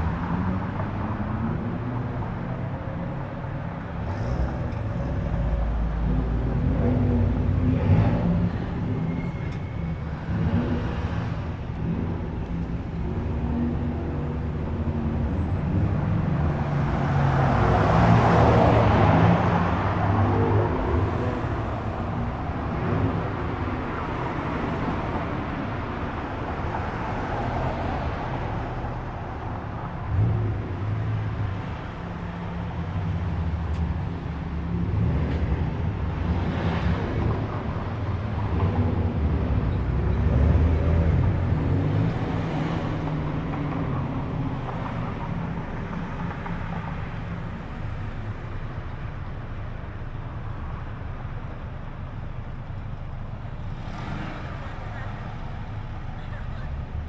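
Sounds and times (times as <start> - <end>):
cars driving slowly past: 0.0 - 57.0.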